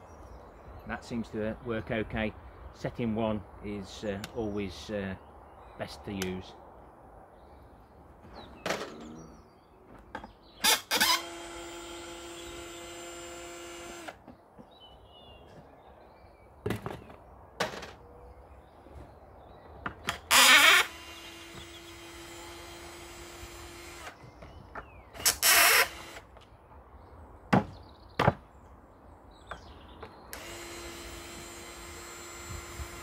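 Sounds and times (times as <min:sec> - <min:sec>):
cordless drill motor whining: 0:10.7 - 0:14.2, 0:20.3 - 0:24.2, 0:25.2 - 0:26.2, 0:30.3 - 0:33.0
sharp knocks on wood: 0:27.5 - 0:28.4.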